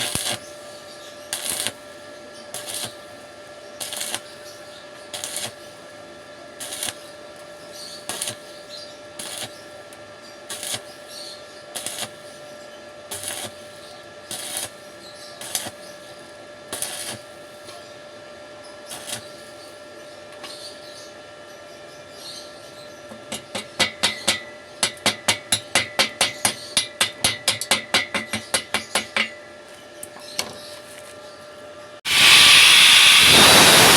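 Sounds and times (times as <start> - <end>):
steady hum: 31.0 - 33.9.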